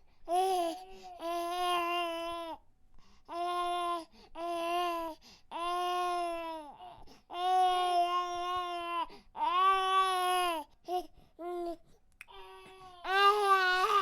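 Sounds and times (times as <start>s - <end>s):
baby crying: 3.3s - 10.7s, 12.3s - 14.0s.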